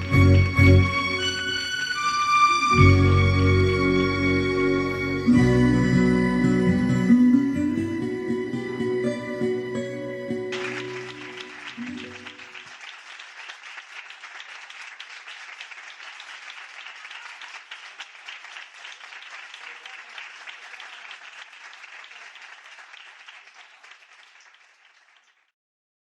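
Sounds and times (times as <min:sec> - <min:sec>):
audience applauding: 0:00.0 - 0:07.0, 0:07.7 - 0:25.5
backing music held notes: 0:00.0 - 0:12.4.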